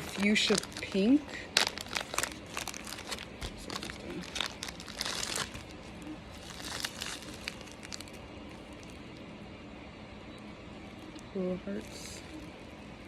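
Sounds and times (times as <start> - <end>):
plastic bag crinkling: 0.0 - 9.2.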